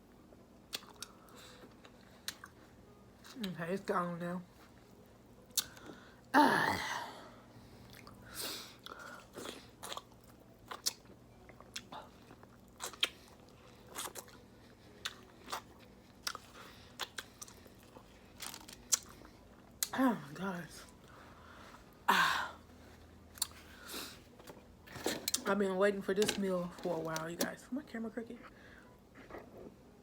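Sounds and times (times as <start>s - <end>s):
person chewing with mouth clicks: 0.7s - 2.6s, 8.8s - 19.9s
throaty vocal sound: 6.4s - 7.2s.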